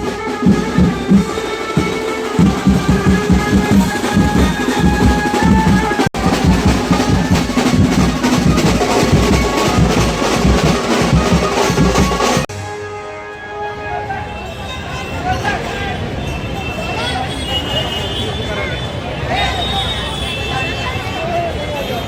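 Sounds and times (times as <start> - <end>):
held melody line: 0.0 - 12.5
heavy drumbeats: 0.0 - 12.7.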